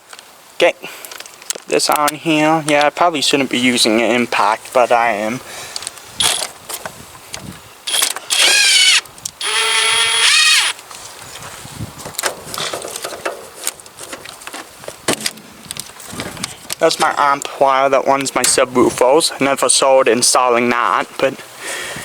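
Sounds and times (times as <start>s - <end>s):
cordless impact tool whirring: 7.9s - 10.8s.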